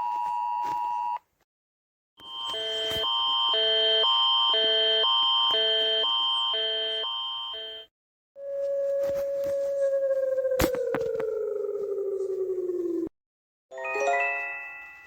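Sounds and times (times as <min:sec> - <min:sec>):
steady high alarm tone: 0:02.2 - 0:09.5
steady low alarm tone: 0:02.2 - 0:10.6
two-tone warbling alarm: 0:02.2 - 0:10.6.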